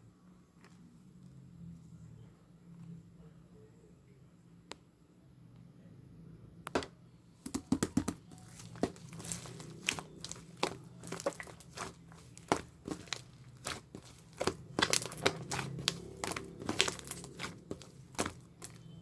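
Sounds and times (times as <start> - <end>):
slime crackling and popping: 7.5 - 19.0.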